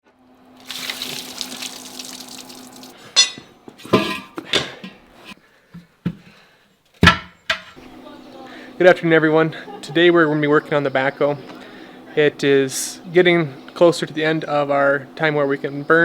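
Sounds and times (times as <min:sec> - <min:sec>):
faint steady hum: 0:00.4 - 0:16.0
metal objects clanking: 0:03.2 - 0:04.4.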